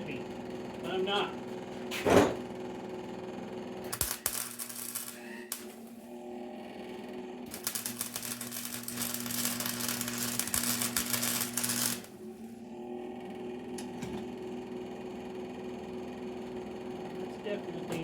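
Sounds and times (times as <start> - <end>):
arc welder crackling: 3.8 - 12.8
welder hum: 3.8 - 16.7.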